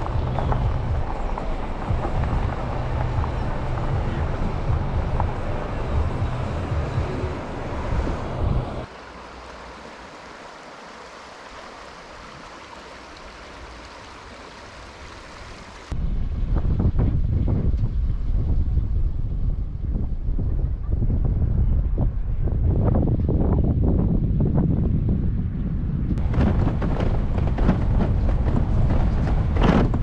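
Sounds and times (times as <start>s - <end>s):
wind buffeting microphone: 0.0s - 8.9s, 15.1s - 30.0s.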